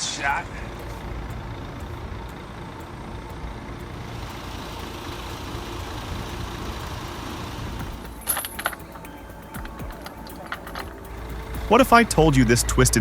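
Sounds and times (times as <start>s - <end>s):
heavy machinery engine rumbling: 0.0s - 13.0s
sharp clicks: 8.0s - 11.2s.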